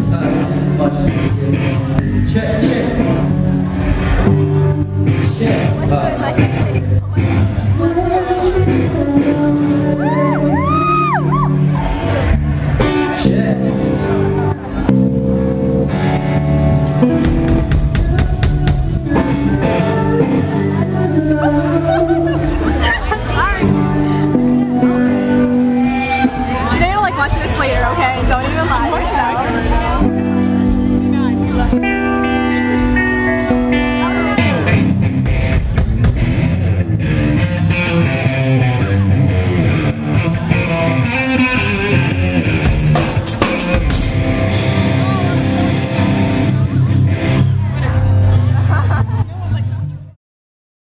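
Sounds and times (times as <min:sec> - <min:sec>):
distorted electric guitar chords: 0:00.0 - 0:50.2
drum kit: 0:11.3 - 0:49.3
drum kit hits: 0:16.8 - 0:19.5, 0:34.4 - 0:36.9, 0:42.5 - 0:45.0.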